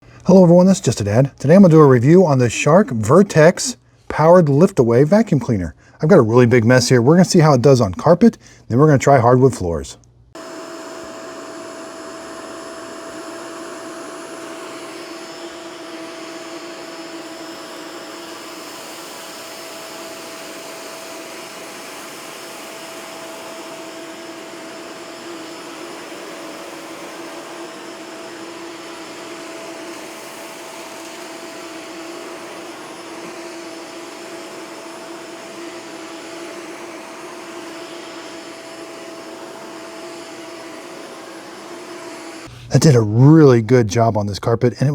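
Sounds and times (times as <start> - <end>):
vacuum cleaner running on carpet: 10.4 - 43.0.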